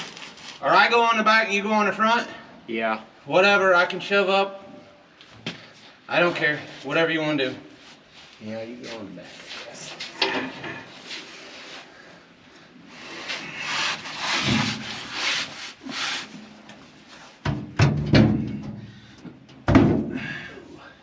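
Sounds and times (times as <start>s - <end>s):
heavy metal clunks: 17.5s - 20.2s.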